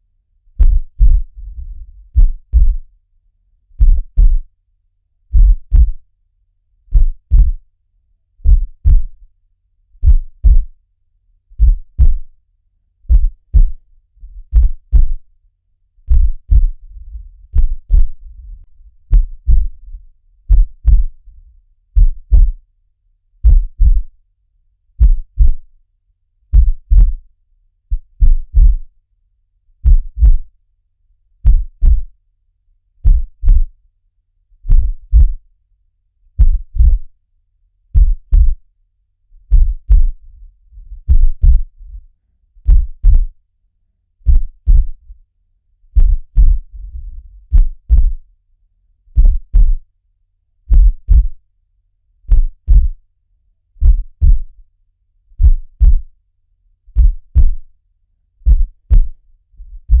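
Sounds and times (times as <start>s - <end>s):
faint low rumble: 0.0s - 4.6s, 5.3s - 6.1s, 6.9s - 7.8s, 8.4s - 9.4s, 10.0s - 10.8s, 11.5s - 12.4s, 13.0s - 22.8s, 23.4s - 24.2s, 24.9s - 25.8s, 26.5s - 27.2s, 27.9s - 29.0s, 29.8s - 30.6s, 31.4s - 32.2s, 33.0s - 33.8s, 34.6s - 35.5s, 36.3s - 37.2s, 38.0s - 38.7s, 39.4s - 43.4s, 44.2s - 45.3s, 45.9s - 48.4s, 49.1s - 49.9s, 50.7s - 51.5s, 52.3s - 53.0s, 53.8s - 54.7s, 55.3s - 56.2s, 56.9s - 57.8s, 58.4s - 60.0s
heartbeat double thump: 0.6s - 2.9s, 3.8s - 4.4s, 5.3s - 6.0s, 6.9s - 7.6s, 8.4s - 9.2s, 10.0s - 10.7s, 11.6s - 12.3s, 13.1s - 13.8s, 14.4s - 15.2s, 16.1s - 21.2s, 22.0s - 22.6s, 23.4s - 24.1s, 25.0s - 25.6s, 26.5s - 27.2s, 27.9s - 28.9s, 29.8s - 30.4s, 31.4s - 32.1s, 33.0s - 33.7s, 34.7s - 35.4s, 36.4s - 37.1s, 38.0s - 38.6s, 39.5s - 40.2s, 40.8s - 41.8s, 42.6s - 43.3s, 44.3s - 45.0s, 46.0s - 48.2s, 49.2s - 49.8s, 50.7s - 51.4s, 52.3s - 53.0s, 53.8s - 54.5s, 55.4s - 56.1s, 57.0s - 57.7s, 58.5s - 60.0s.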